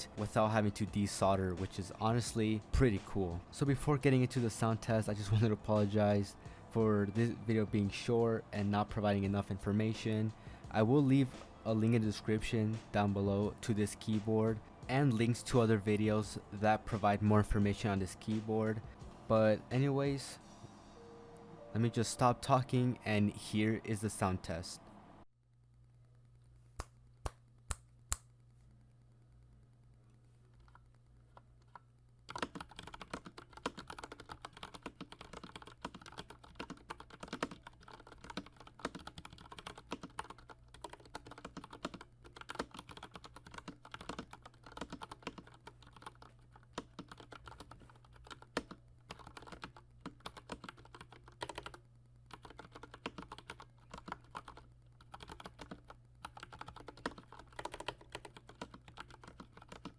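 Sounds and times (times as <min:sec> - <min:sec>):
mechanical keyboard typing: 0:31.7 - 0:59.9.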